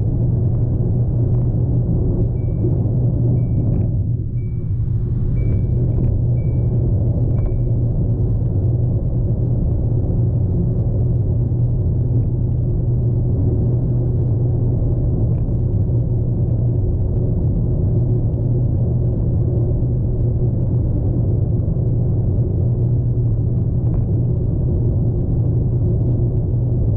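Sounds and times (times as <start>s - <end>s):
car rumble from inside cabin: 0.0s - 26.9s
short high beeps: 3.4s - 6.8s.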